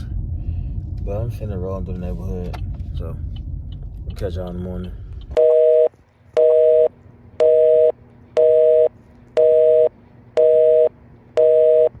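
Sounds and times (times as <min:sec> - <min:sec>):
telephone busy signal beeping: 0:05.4 - 0:12.0.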